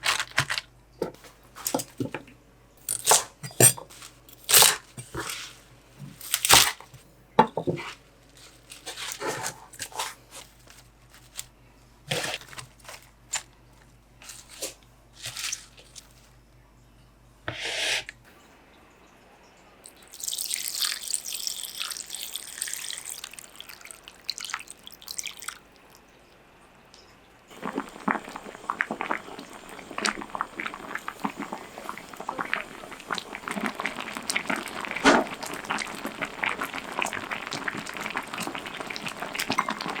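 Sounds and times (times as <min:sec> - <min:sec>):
hissing: 0:27.5 - 0:39.5
dense crackling: 0:27.5 - 0:40.0.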